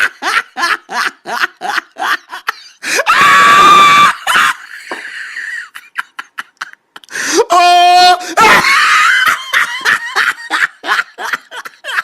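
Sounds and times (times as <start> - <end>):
laughter: 0.0 - 2.8, 4.2 - 7.1, 8.4 - 12.0
high-pitched human scream: 2.9 - 4.6, 7.3 - 9.0.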